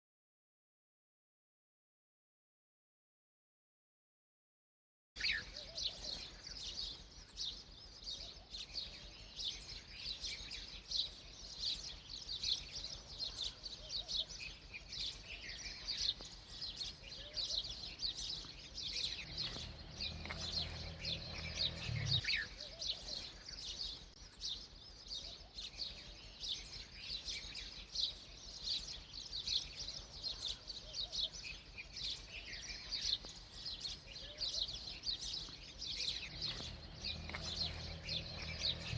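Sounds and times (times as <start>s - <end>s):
flock of small birds chirping: 5.2s - 38.9s
low hum: 19.3s - 22.3s.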